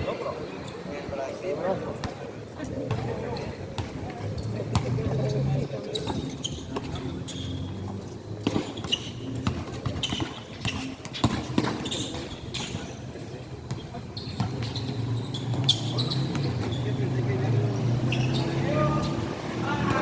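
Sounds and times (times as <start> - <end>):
sneaker squeaks: 2.9 - 20.0
basketball bouncing: 8.4 - 12.3.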